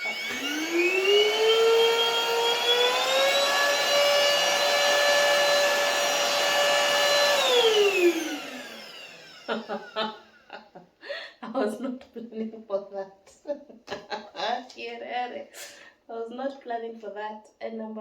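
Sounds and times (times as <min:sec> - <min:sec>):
stick vacuum cleaner motor whining: 0:00.0 - 0:10.5.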